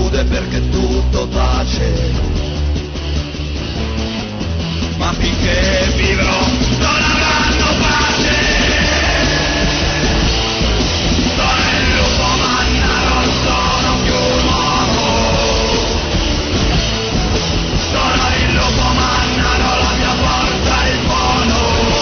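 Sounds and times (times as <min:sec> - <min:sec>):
punk rock song: 0:00.0 - 0:22.0.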